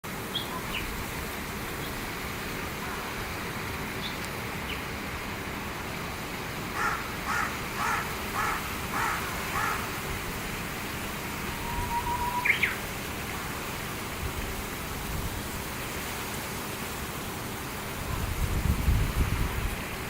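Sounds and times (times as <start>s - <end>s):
harsh bird calls: 6.7s - 10.1s.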